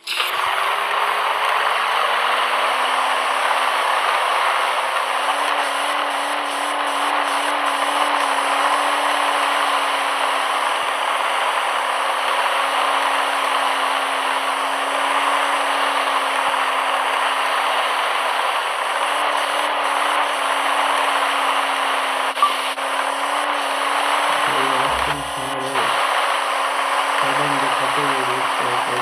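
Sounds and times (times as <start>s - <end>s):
car engine running: 0.2s - 29.0s.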